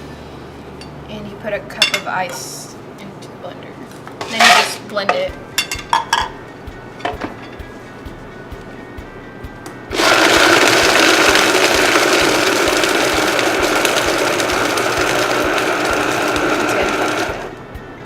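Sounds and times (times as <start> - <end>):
blender crushing ice: 9.9 - 17.5.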